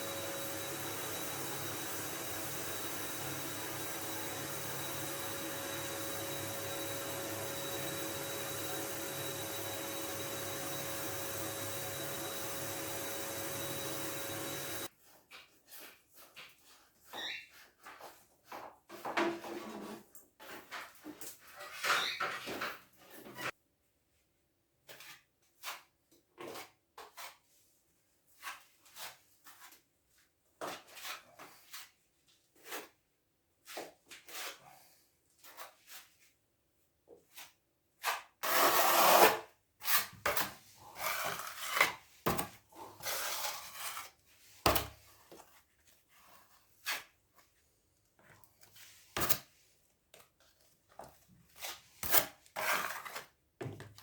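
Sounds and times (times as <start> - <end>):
hand tools scraping a hard surface: 38.0 - 44.8, 51.6 - 53.3.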